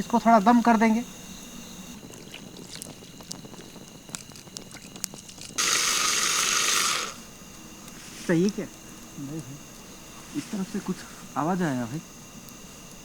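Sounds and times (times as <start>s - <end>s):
night insects chirring: 0.0s - 13.0s
small clicks: 2.1s - 7.2s
loud even hiss: 5.6s - 7.3s.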